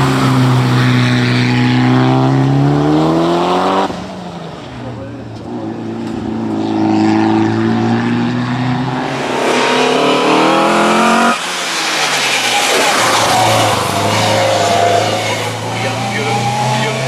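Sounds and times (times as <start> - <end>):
race car engine accelerating: 5.8 - 17.0
car rushing past: 6.6 - 17.0.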